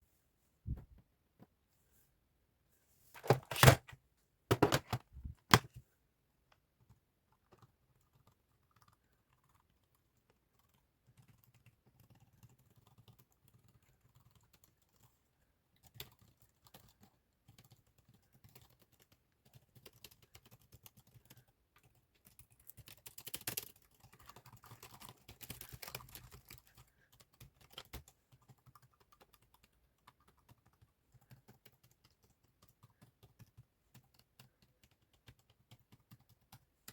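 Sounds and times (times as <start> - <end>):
typing on computer keyboard: 6.9 - 15.1, 15.8 - 36.9.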